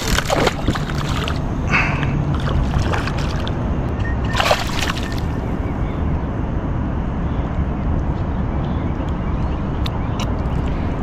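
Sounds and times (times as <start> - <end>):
fish splashing in water: 0.0 - 3.6, 4.3 - 5.4
wind rumble on microphone: 0.0 - 11.0.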